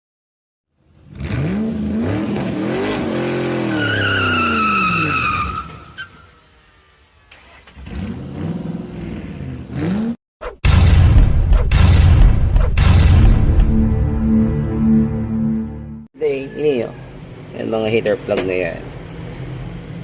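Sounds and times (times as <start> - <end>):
car engine revving: 1.0 - 5.2, 6.4 - 10.2
tyre squeal: 3.5 - 6.4.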